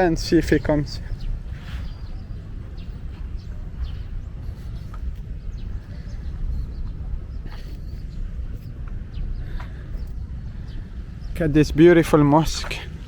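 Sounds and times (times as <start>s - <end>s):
small birds chirping: 0.0s - 13.0s
low rumble: 0.9s - 11.8s.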